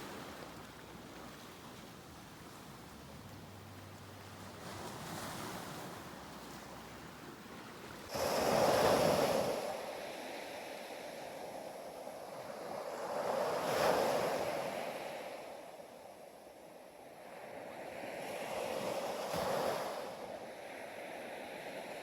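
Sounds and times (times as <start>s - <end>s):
ocean waves breaking: 0.0s - 16.1s.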